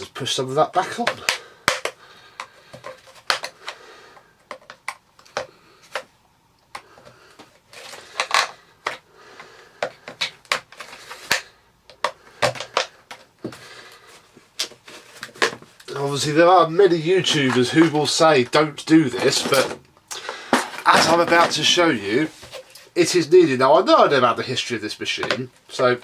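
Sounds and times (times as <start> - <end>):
plastic clips clicking and snapping: 1.0 - 3.6.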